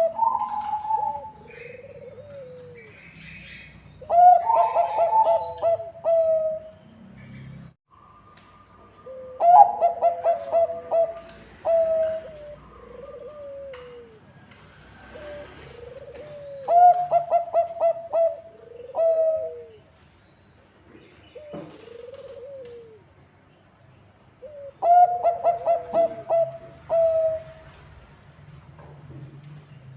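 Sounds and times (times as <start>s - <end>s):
soft low dove coos: 0.0s - 3.0s, 9.0s - 14.3s, 21.4s - 23.1s
dove cooing: 0.0s - 6.7s, 9.0s - 14.3s, 15.0s - 19.9s, 21.3s - 23.1s, 24.4s - 27.8s.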